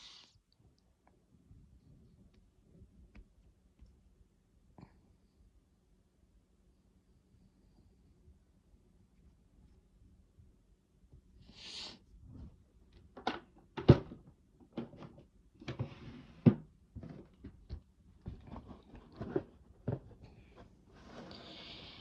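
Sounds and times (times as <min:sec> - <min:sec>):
hissing breaths: 0:11.4 - 0:12.0.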